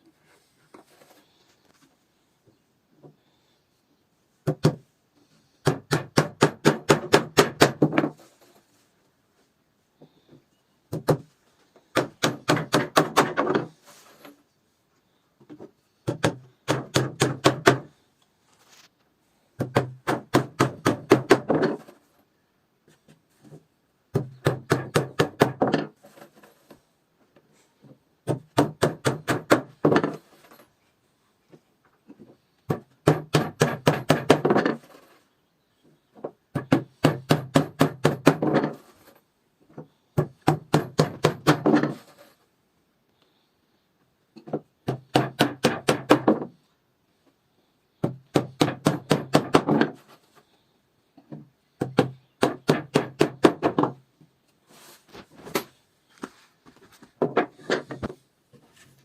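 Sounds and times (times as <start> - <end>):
hammering on wood: 4.4 - 4.8, 5.6 - 8.2, 11.9 - 13.7, 16.0 - 17.9, 19.6 - 21.8, 24.1 - 25.9, 28.2 - 30.2, 32.7 - 34.8, 36.5 - 38.8, 40.2 - 42.0, 44.4 - 46.5, 48.0 - 50.0, 51.8 - 54.0.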